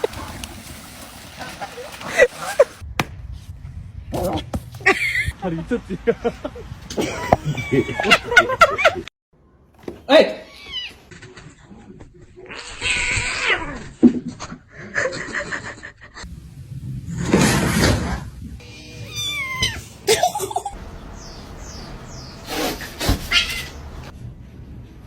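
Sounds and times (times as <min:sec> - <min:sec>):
cats meowing: 0:18.6 - 0:20.0, 0:23.0 - 0:24.1.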